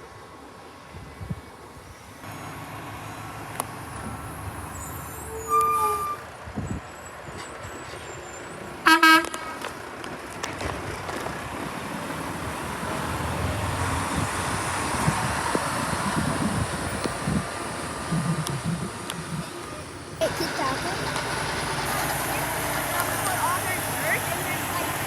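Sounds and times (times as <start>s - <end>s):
engine and traffic noise: 0.0s - 25.0s
vehicle horn toot: 5.3s - 6.2s, 8.8s - 9.6s.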